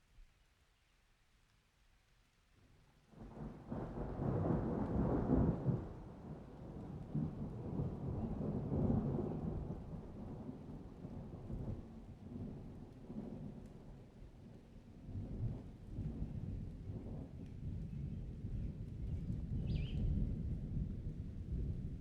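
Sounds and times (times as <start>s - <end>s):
rolling thunder: 3.2s - 12.7s.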